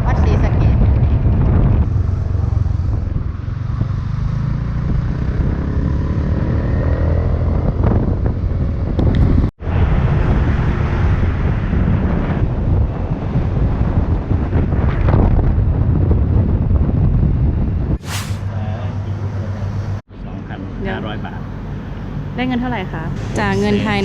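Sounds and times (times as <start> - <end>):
wind buffeting microphone: 0.0 - 18.5.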